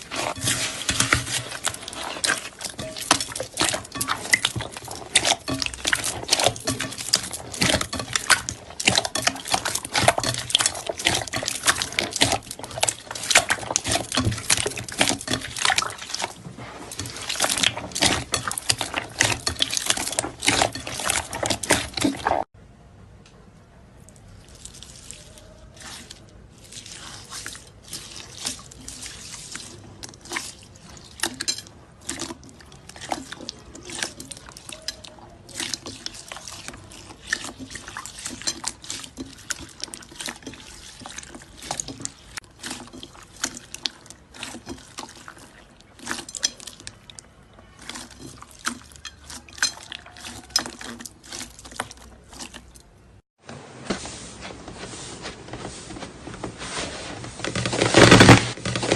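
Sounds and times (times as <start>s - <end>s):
slime squelching and popping: 0.0s - 22.5s.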